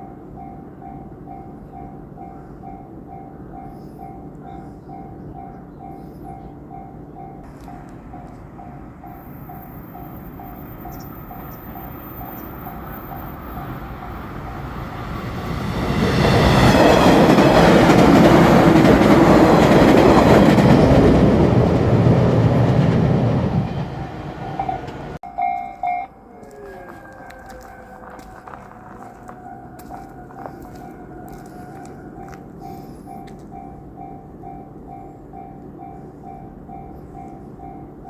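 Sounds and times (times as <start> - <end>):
electric train passing: 6.6 - 38.0
level crossing bell dinging: 24.5 - 26.3.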